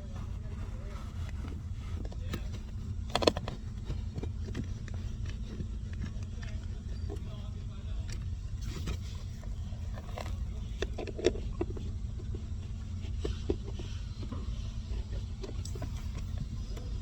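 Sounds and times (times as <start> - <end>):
motor parts clicking and knocking: 1.0 - 7.4.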